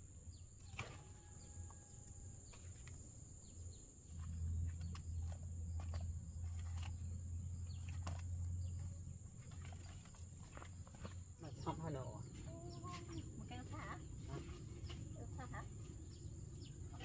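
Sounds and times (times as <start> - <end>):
insect clicks and chirps: 0.3 - 17.0.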